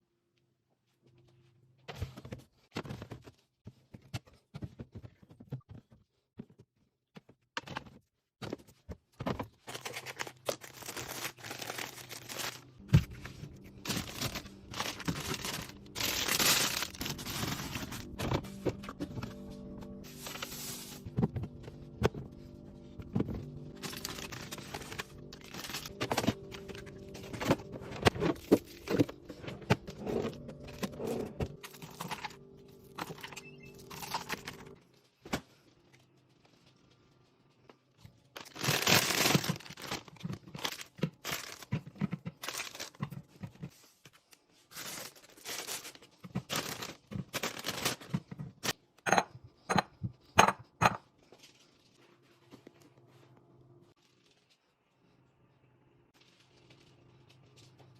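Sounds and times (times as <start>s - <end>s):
plastic wrappers crinkling: 9.6s - 18.7s, 23.4s - 29.3s, 35.8s - 48.8s
soft background music: 10.8s - 34.9s.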